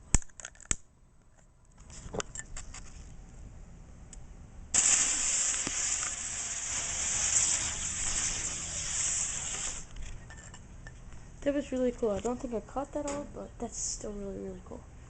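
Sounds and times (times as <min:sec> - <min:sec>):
fuse burning with a hiss: 0:04.7 - 0:10.2.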